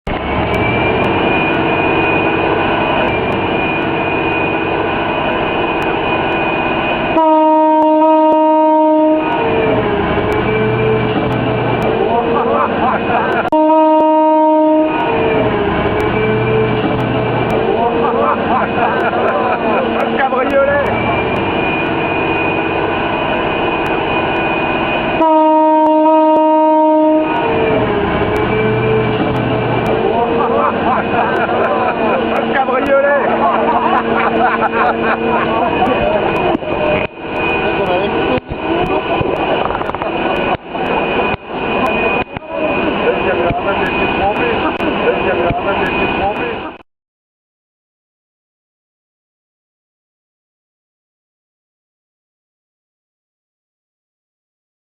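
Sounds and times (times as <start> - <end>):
excavator machinery with high whine: 0.1 - 13.5, 14.4 - 46.8
deep horn: 7.1 - 11.0, 13.5 - 16.8, 25.2 - 29.9
excavator machinery din: 26.4 - 46.8.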